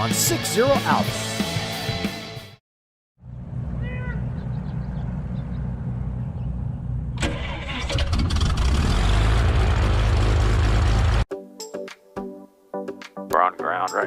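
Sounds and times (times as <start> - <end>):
aircraft engine starting: 4.2 - 11.2.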